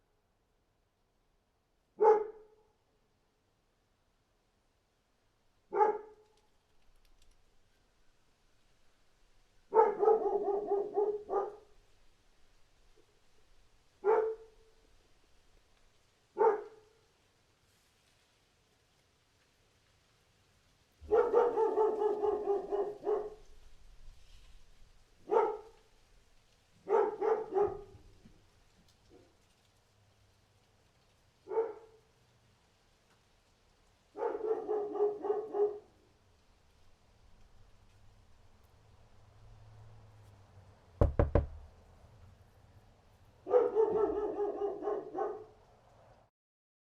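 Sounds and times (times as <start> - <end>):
dog barking: 2.0 - 2.7, 5.7 - 6.2, 9.7 - 11.8, 14.0 - 14.8, 16.4 - 17.0, 21.0 - 23.6, 25.2 - 25.8, 26.8 - 28.1, 31.4 - 32.1, 34.1 - 36.0, 43.4 - 45.6.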